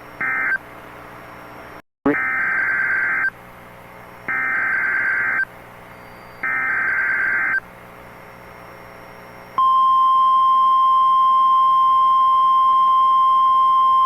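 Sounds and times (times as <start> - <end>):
steady warning alarm tone: 4.3 - 5.5, 6.4 - 7.6.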